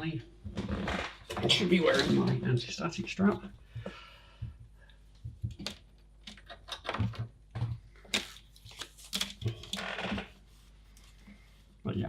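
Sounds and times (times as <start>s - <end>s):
hands handling plastic card: 8.0s - 9.8s.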